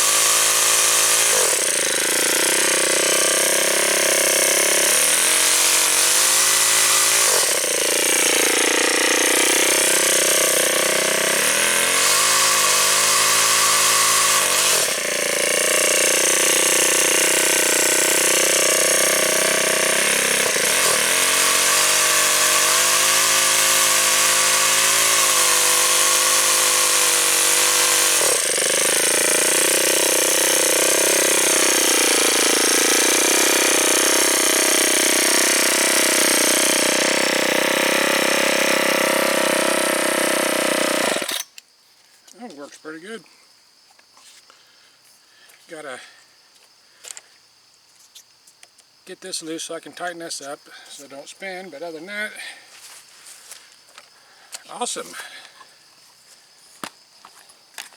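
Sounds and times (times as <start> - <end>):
chainsaw engine at high revs: 0.0 - 41.5.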